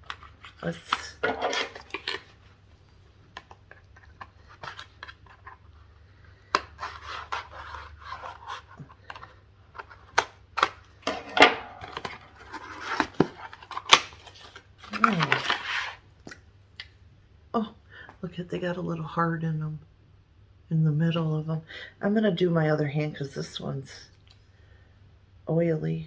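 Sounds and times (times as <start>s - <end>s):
packaging clicks and rustles: 0.0s - 16.0s.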